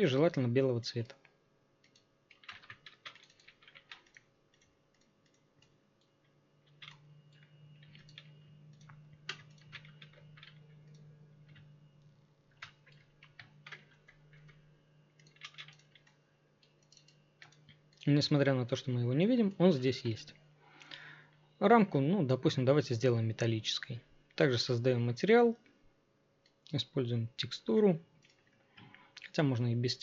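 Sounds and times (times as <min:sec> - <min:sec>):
low steady hum: 0:00.0 - 0:30.0
keyboard and mouse clicks: 0:01.8 - 0:11.7, 0:15.2 - 0:18.1.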